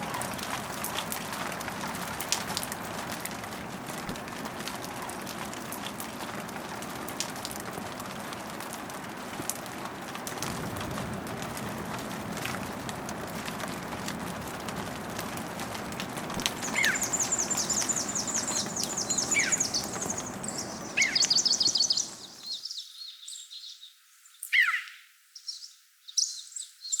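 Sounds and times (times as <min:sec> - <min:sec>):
small birds singing: 0:16.4 - 0:27.0.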